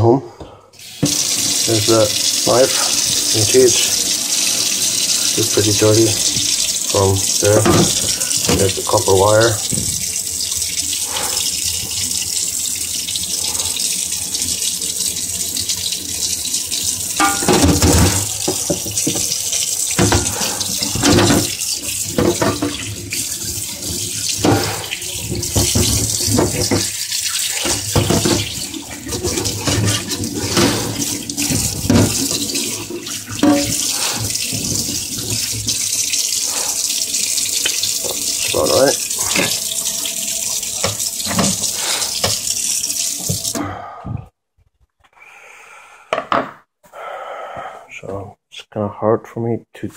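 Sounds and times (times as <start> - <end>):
tap water running into sink: 0.8 - 43.6
knocks and splashes: 7.5 - 8.8, 9.7 - 10.1, 17.2 - 19.3, 20.0 - 35.7.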